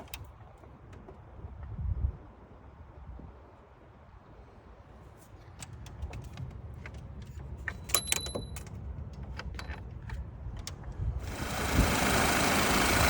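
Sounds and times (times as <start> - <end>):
keys jingling: 7.7 - 8.8
misfiring car engine starting: 11.2 - 13.0.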